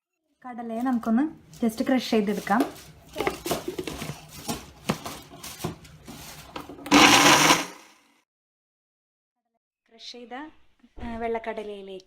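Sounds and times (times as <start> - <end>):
food processor motor: 6.8 - 8.1
chickpeas clattering in food processor: 6.9 - 8.0.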